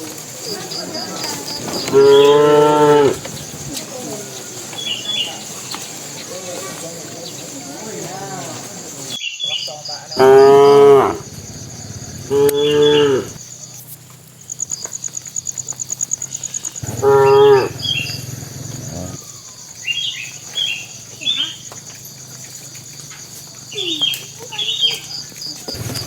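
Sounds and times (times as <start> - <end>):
high insect chirring: 0.4 - 6.7, 7.3 - 26.0
cattle mooing: 1.7 - 3.7, 10.2 - 13.4, 16.8 - 19.2.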